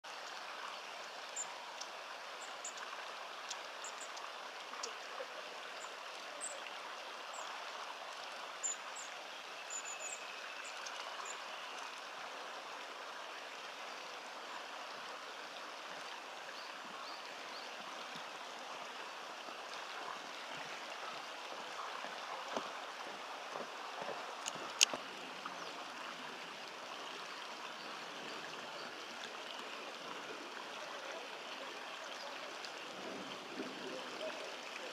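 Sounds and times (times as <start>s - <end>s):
stream water flowing: 0.0s - 34.9s.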